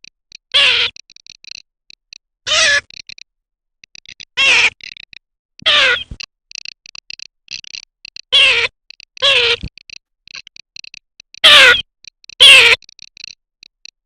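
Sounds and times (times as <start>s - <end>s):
dry clicking rattle: 0.0s - 5.2s, 6.2s - 14.0s
duck nasal calls: 2.5s - 2.9s, 8.3s - 9.7s, 11.4s - 11.8s, 12.4s - 12.8s.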